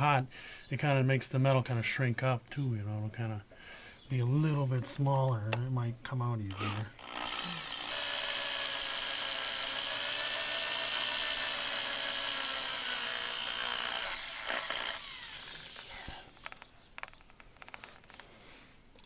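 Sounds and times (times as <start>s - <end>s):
electric drill whining: 6.5s - 16.6s.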